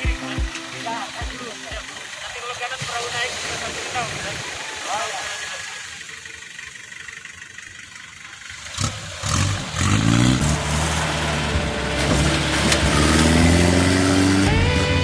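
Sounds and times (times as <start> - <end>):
music: 0.0 - 2.0, 14.4 - 15.0
jeep engine revving: 3.9 - 15.0.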